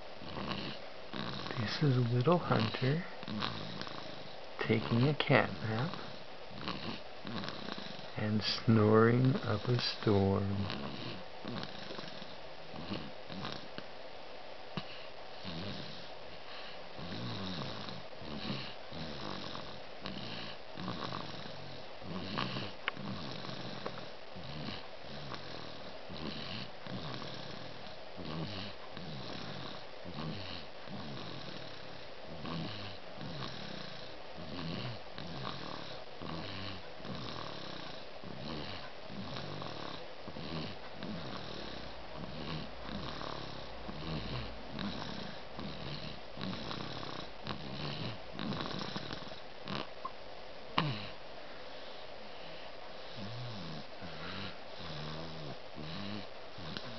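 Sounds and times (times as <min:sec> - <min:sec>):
person snoring: 0:00.2 - 0:13.7, 0:14.8 - 0:49.9, 0:51.8 - 0:56.9.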